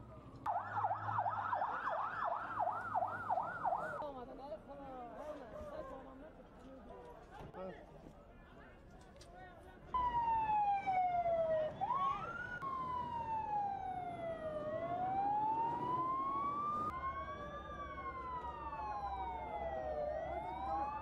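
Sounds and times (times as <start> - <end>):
emergency vehicle siren wailing: 0.1 - 4.1, 10.0 - 21.0
second siren rising sweep: 0.5 - 4.0, 10.0 - 21.0.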